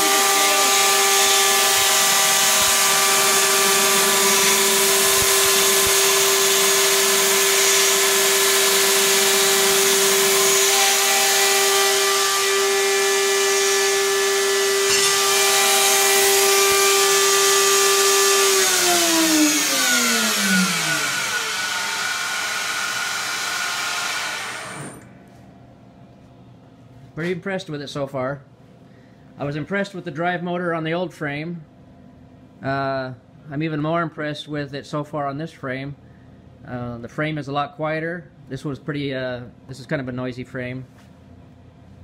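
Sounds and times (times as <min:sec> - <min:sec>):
belt sander whine and hum: 0:00.0 - 0:25.3.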